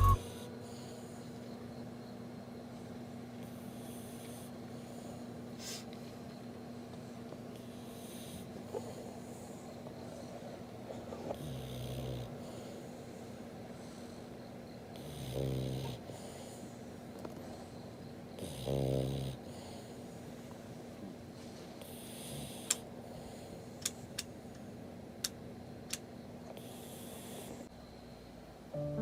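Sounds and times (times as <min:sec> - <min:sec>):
dog snoring: 0:00.0 - 0:01.2, 0:03.4 - 0:05.8, 0:07.1 - 0:14.3, 0:14.9 - 0:17.8, 0:18.4 - 0:20.3, 0:21.8 - 0:23.6, 0:26.5 - 0:27.7.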